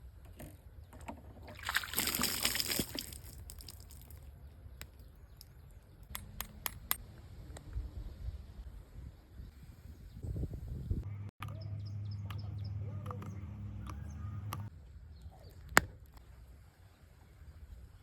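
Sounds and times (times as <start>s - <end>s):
water splashing and sloshing: 1.3s - 4.2s.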